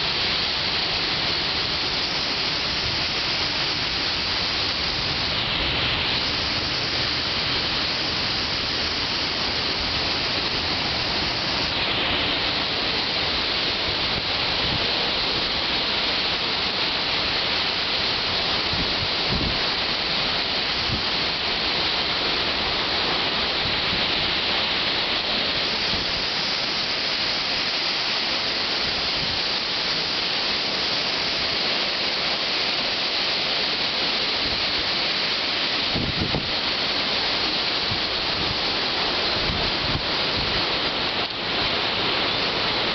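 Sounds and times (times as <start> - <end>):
wind and heavy rain rushing: 0.0 - 42.9
wind buffeting microphone: 35.9 - 36.7, 39.3 - 40.7.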